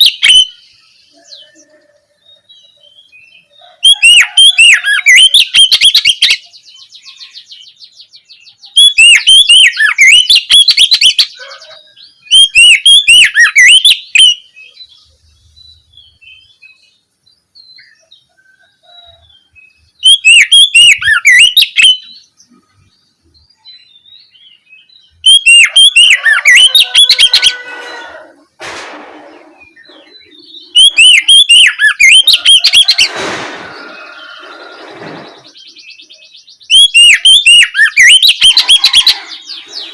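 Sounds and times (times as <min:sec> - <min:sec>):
bird harsh rasps: 0:00.0 - 0:02.0, 0:03.8 - 0:07.6, 0:08.6 - 0:14.6, 0:20.0 - 0:22.8, 0:25.2 - 0:39.9
songbird whistling phrases: 0:00.0 - 0:07.7, 0:08.5 - 0:14.9, 0:20.0 - 0:22.3, 0:25.2 - 0:28.1, 0:29.6 - 0:33.2, 0:33.8 - 0:39.9.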